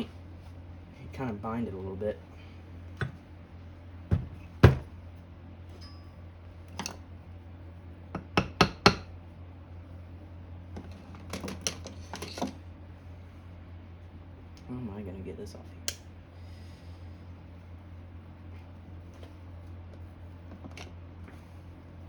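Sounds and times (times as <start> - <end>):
metal tools clinking on a bench: 5.8 - 6.2, 10.8 - 12.6.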